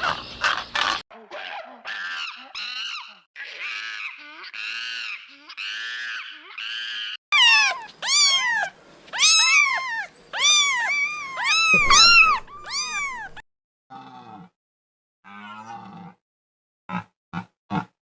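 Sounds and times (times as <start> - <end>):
animal meow-like calls: 1.3 - 13.4.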